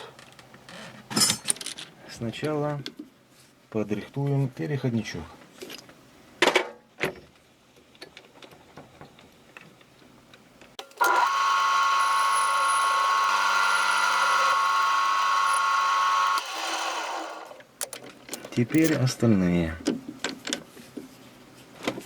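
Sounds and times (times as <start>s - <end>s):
lathe whining: 10.8s - 17.6s.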